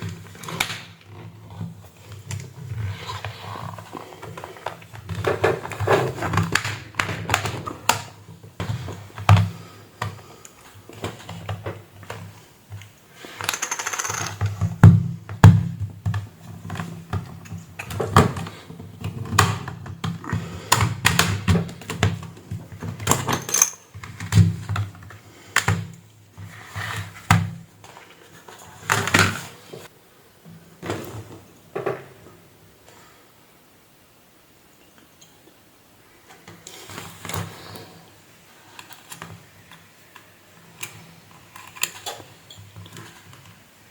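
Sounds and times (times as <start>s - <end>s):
plastic and tools clicking: 10.0s - 14.8s.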